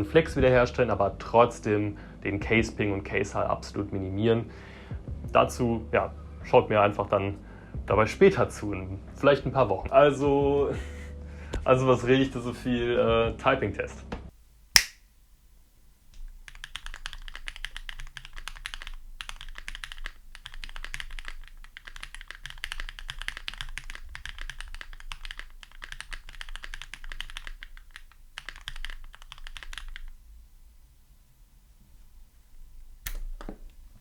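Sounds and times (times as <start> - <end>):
sharp click: 14.7 - 15.1
fast mechanical keyboard typing: 16.5 - 30.1.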